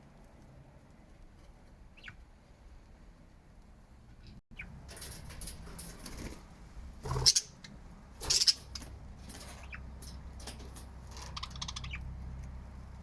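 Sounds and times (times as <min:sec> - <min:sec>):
budgerigars chirping and chattering: 0:02.0 - 0:02.2, 0:04.6 - 0:04.8, 0:07.0 - 0:12.2.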